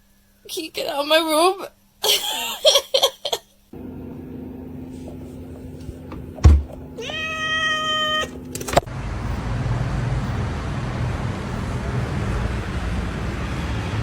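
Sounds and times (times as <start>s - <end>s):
low steady hum: 3.8s - 12.9s
loud thump: 6.1s - 6.9s
cat meowing: 6.8s - 8.5s.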